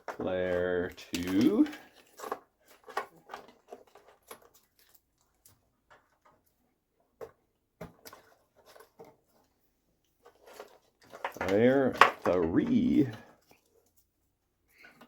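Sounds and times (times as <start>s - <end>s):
wire harness clicks and rustles: 0.0s - 6.6s, 10.2s - 14.1s.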